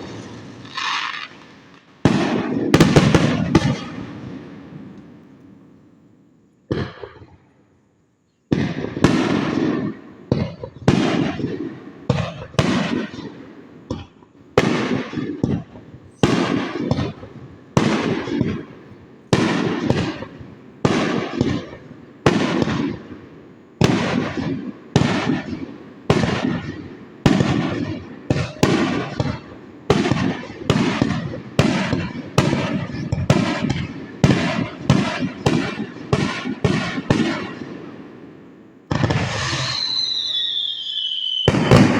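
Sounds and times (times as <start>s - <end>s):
firework shells bursting: 0.0s - 5.2s, 38.9s - 41.9s.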